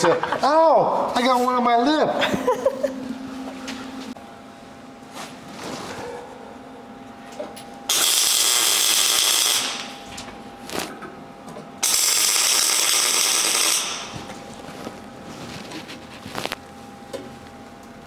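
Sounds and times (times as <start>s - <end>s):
welding arc crackling: 7.9s - 10.9s, 11.8s - 14.7s.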